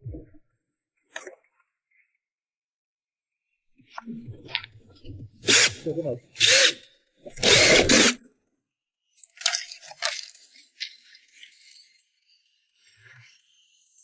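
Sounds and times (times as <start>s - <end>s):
power tool burst: 5.4s - 6.8s, 7.4s - 8.2s.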